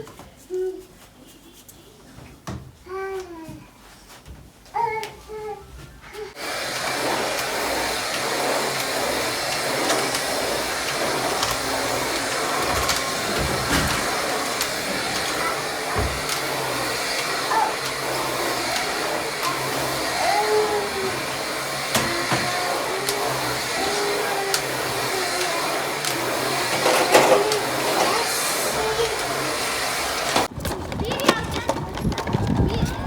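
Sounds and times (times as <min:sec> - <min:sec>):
vacuum cleaner running: 0:06.3 - 0:30.8.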